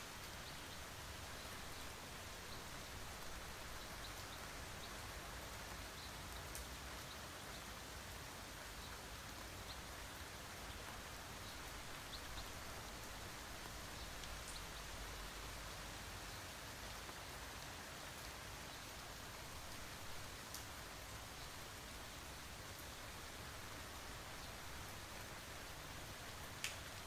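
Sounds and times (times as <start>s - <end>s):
steady rain: 0.0s - 27.0s
single raindrops ticking: 6.0s - 6.8s, 20.5s - 20.8s, 26.5s - 27.0s.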